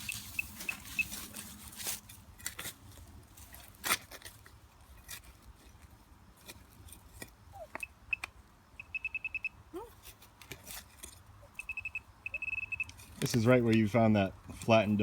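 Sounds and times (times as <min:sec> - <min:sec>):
light clicks and rustles: 0:12.8 - 0:14.8.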